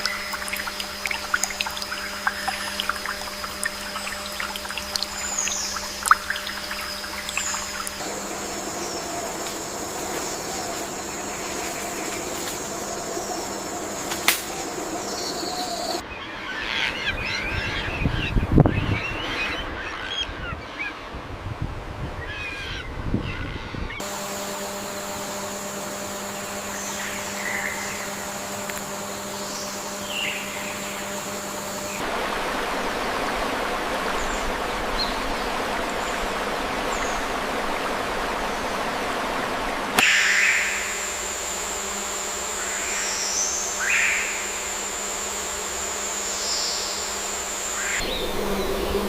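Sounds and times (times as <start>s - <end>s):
birds chirping: 0.0s - 20.9s, 22.3s - 32.0s, 47.7s - 49.0s.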